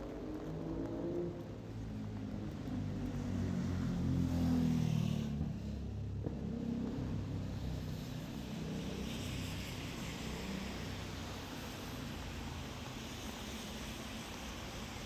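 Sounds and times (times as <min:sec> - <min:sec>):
vehicle passing on wet road: 0:00.0 - 0:15.0
rain hissing: 0:07.5 - 0:15.0.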